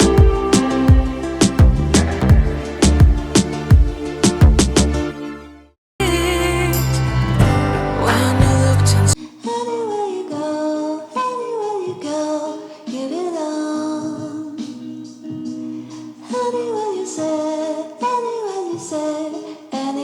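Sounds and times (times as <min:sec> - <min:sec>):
woman singing: 0:00.0 - 0:01.4, 0:06.0 - 0:06.9, 0:08.0 - 0:20.0
background music: 0:00.0 - 0:09.2.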